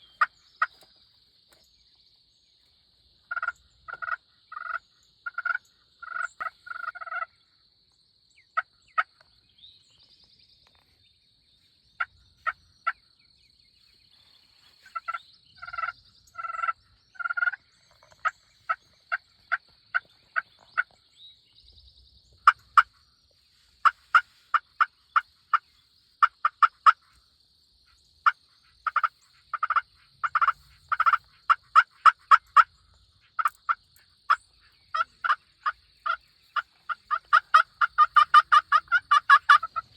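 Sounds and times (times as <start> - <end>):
turkey yelping and clucking: 3.3 - 7.3, 15.0 - 17.6, 28.2 - 32.7, 33.4 - 39.9.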